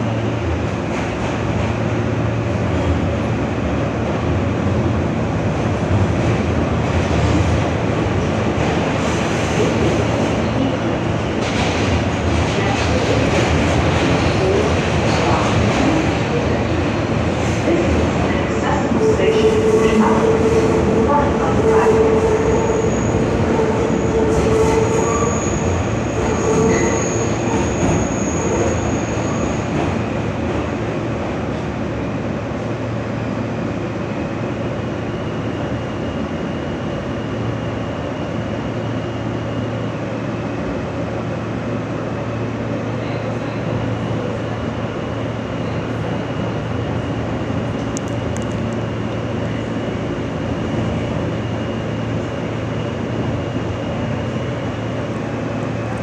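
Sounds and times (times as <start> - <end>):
subway wheels rumbling on rail: 0.0 - 56.0
high wheel squeal: 23.9 - 29.6.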